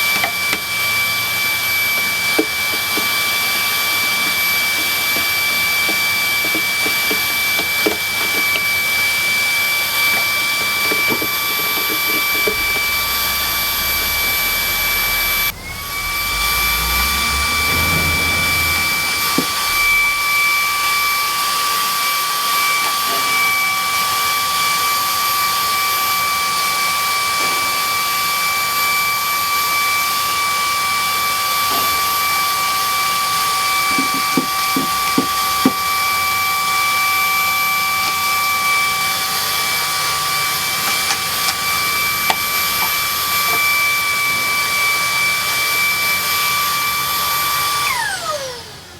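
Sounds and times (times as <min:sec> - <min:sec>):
electric motor whining: 0:00.0 - 0:48.9
low rumble: 0:12.2 - 0:21.5.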